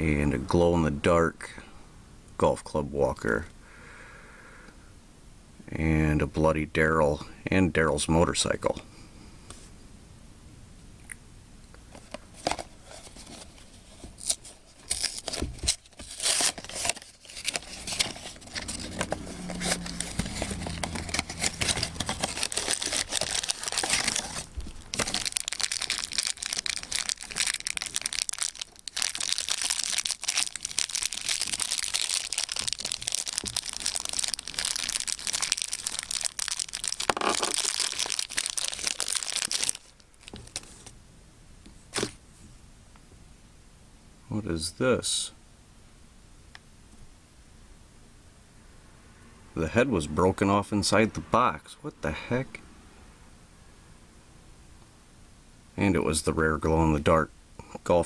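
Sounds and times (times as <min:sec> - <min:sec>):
cardboard box tearing and crinkling: 0:14.2 - 0:40.8.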